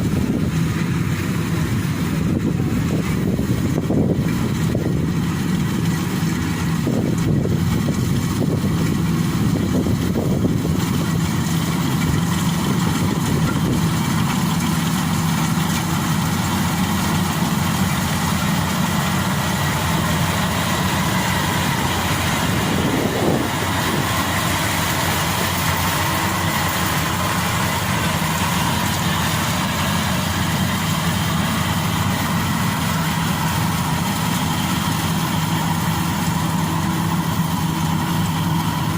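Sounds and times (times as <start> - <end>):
combine harvester engine hum: 0.0 - 38.9.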